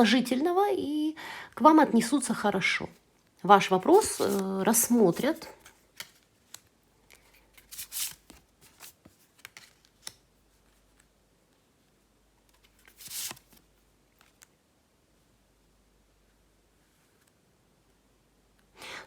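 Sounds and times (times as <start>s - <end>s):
cards clicking and rustling: 3.8s - 10.7s, 12.5s - 13.6s.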